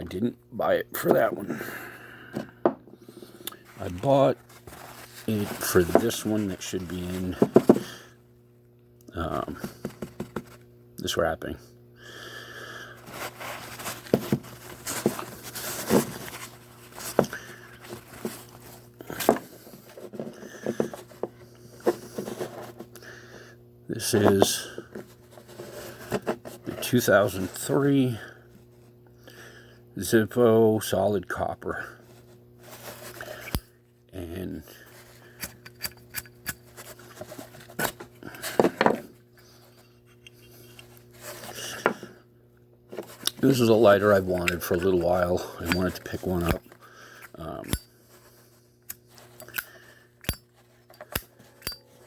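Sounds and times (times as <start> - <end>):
packaging wrap crinkling: 3.6 - 6.7.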